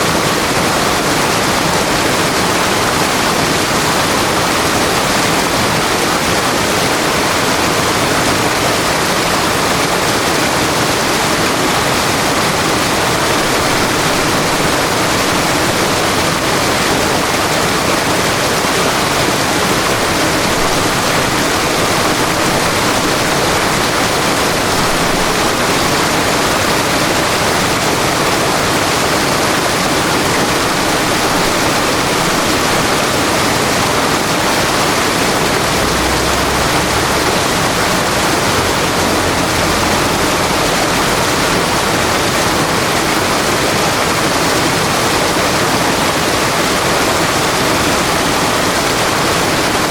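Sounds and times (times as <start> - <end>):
river water rushing: 0.0 - 49.9.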